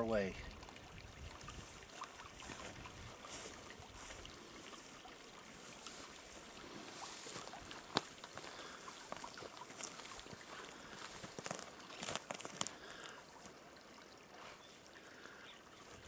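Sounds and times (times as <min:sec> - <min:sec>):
footsteps through dry leaves: 0:05.6 - 0:12.7.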